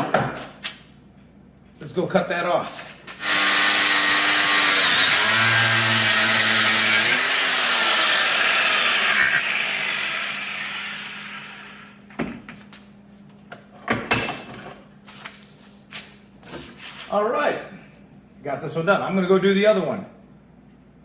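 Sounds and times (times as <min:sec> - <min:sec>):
power tool cutting bolt: 0:03.2 - 0:12.0.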